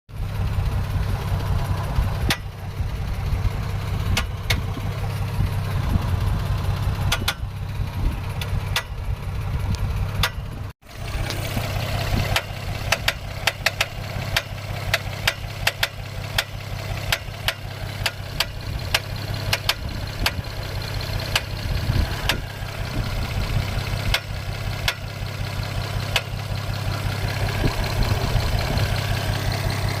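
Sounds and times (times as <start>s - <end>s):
car engine idling: 0.1s - 30.0s
sharp ticking knock: 12.4s - 20.4s.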